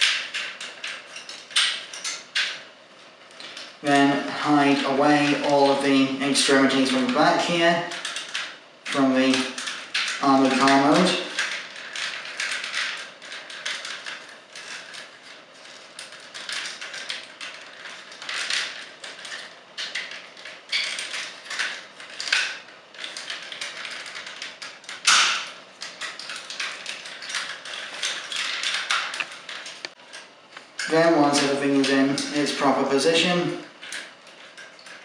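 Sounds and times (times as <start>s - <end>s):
plastic toy parts clicking and snapping: 0.0s - 2.6s, 7.9s - 8.5s, 9.3s - 31.6s, 33.7s - 35.0s.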